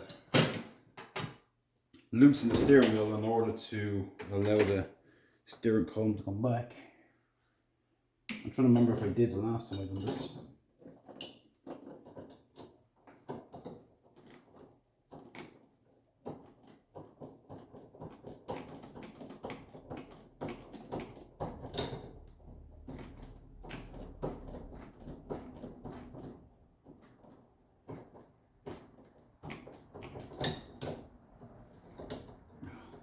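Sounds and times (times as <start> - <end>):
hand tools clicking and knocking: 8.3 - 33.0.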